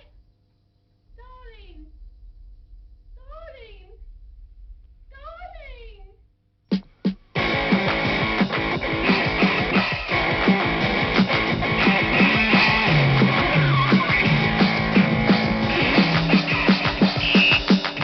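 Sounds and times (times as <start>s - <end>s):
loud guitar music: 7.4s - 18.0s
moving bass line: 7.4s - 18.0s.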